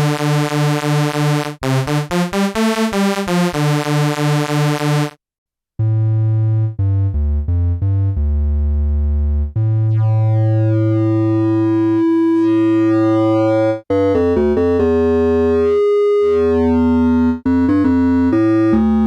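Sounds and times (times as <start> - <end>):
deep synthesizer bass line: 5.8 - 19.0
pulsing synthesizer note with noise: 9.9 - 13.8.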